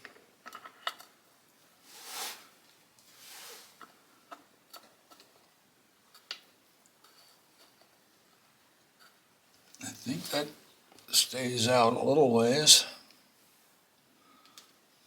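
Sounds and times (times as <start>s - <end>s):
soft rustling: 1.8s - 4.0s.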